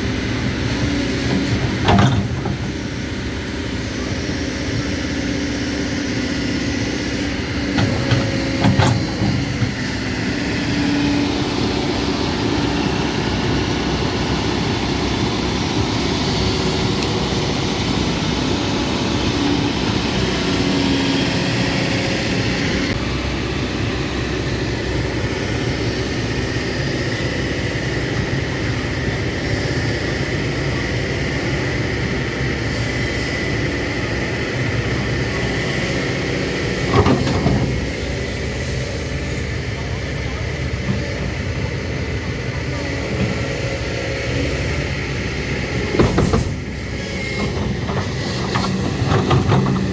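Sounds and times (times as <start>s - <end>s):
excavator diesel engine: 0.0s - 49.9s.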